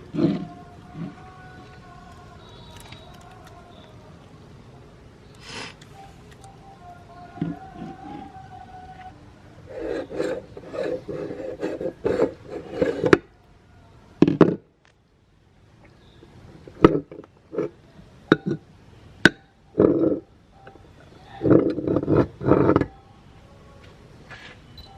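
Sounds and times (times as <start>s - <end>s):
sharp clicks: 2.1s - 4.0s, 5.3s - 6.6s.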